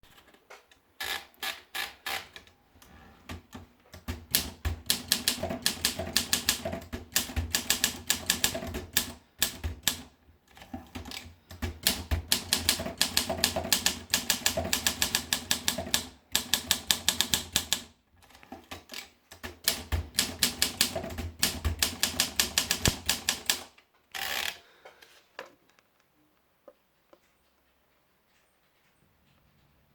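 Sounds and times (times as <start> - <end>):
manual typewriter typing: 3.2 - 24.6.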